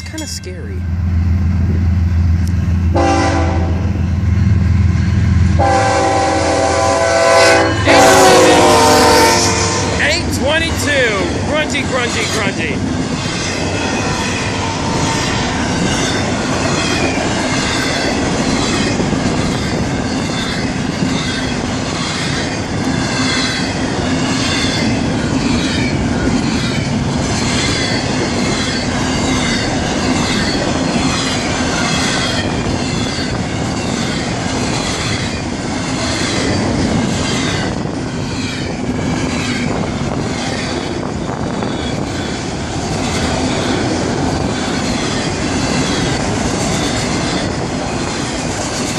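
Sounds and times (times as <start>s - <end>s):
freight train rolling past: 0.0s - 48.9s.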